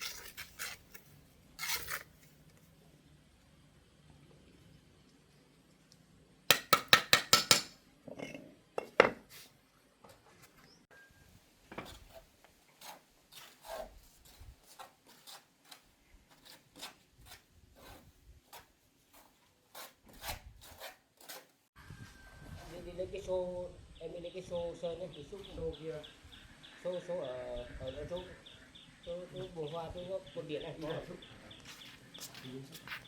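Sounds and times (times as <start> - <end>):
hard objects knocking and clinking: 6.5 - 9.2.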